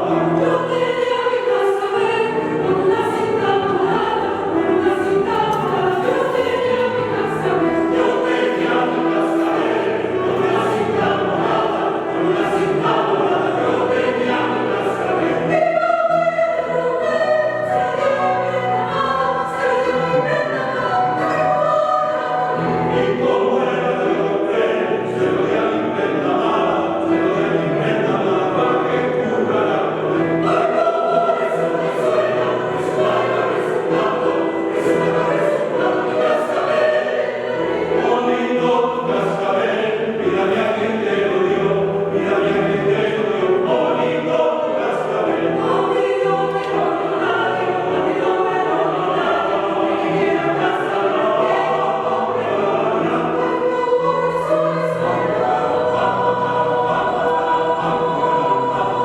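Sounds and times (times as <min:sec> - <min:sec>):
choir singing: 0:00.0 - 0:59.0.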